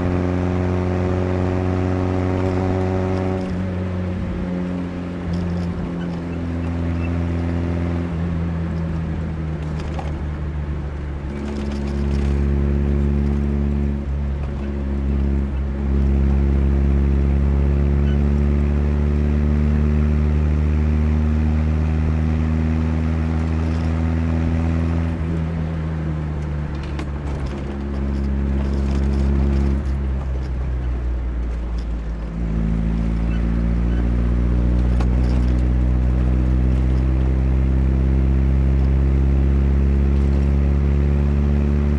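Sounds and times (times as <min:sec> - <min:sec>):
car engine running while driving: 0:00.0 - 0:41.9.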